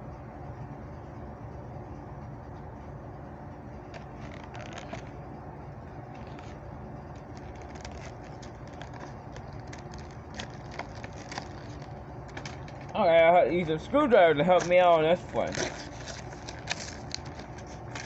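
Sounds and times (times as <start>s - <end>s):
steady low hum: 0.0s - 18.0s
plastic packaging crackling: 3.9s - 5.1s, 6.1s - 13.0s, 14.5s - 18.0s.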